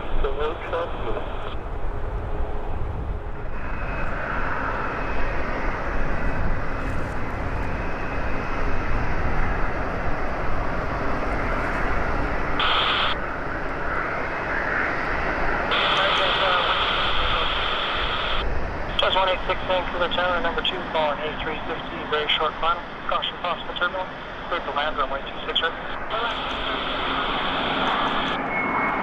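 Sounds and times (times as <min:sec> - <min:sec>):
radio noise burst: 0:00.0 - 0:01.6, 0:11.4 - 0:13.3, 0:15.6 - 0:28.4
faint high jet whine: 0:00.0 - 0:29.0
jet engine rumble: 0:00.0 - 0:29.0.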